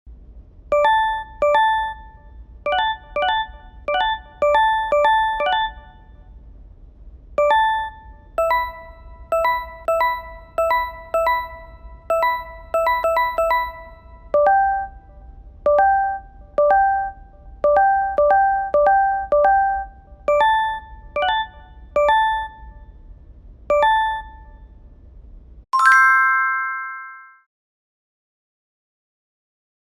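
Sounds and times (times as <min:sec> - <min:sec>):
bell-like notification chimes: 0:02.7 - 0:06.0, 0:07.4 - 0:14.8, 0:25.8 - 0:27.4.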